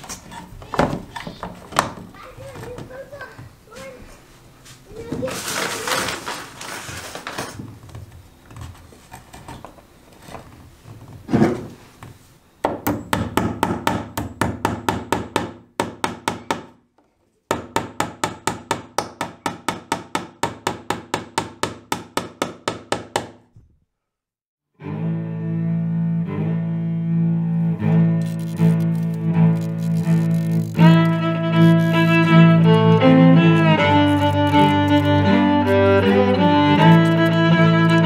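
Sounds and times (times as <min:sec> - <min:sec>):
handling and rubbing noises: 0:00.0 - 0:12.4, 0:28.2 - 0:38.0
hammer striking: 0:12.6 - 0:16.8.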